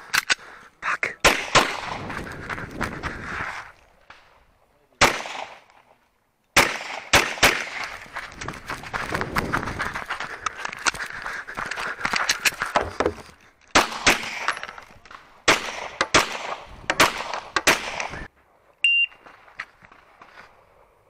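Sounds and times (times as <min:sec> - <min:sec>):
pistol shots: 0:01.2 - 0:02.1, 0:05.0 - 0:05.7, 0:06.6 - 0:07.9, 0:13.7 - 0:14.6, 0:15.4 - 0:18.3
scuffing movement noise: 0:07.8 - 0:13.4
short electronic beep: 0:18.8 - 0:19.2.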